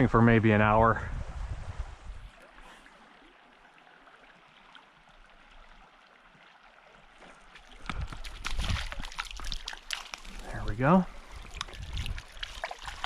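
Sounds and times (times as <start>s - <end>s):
creek flowing: 2.1s - 13.0s
splashing in water: 7.1s - 13.0s.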